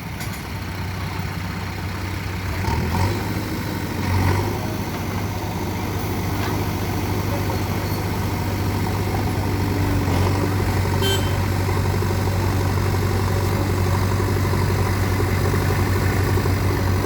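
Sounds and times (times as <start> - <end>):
heavy diesel engine idling: 0.0 - 17.0.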